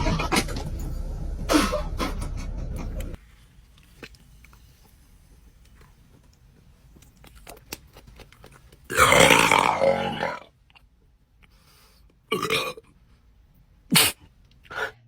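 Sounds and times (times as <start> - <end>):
person burping loudly: 8.9 - 10.5, 12.3 - 12.8.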